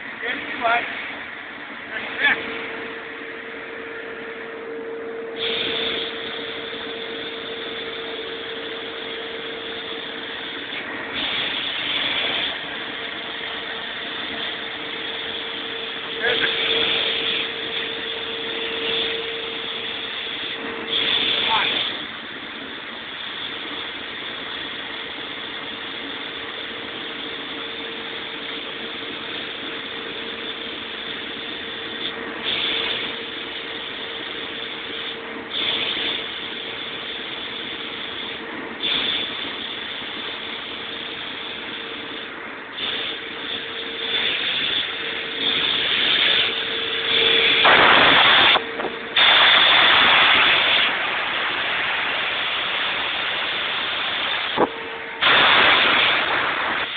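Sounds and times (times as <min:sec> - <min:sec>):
air compressor running: 0:00.0 - 0:56.9
compressed air bursts: 0:05.2 - 0:56.9.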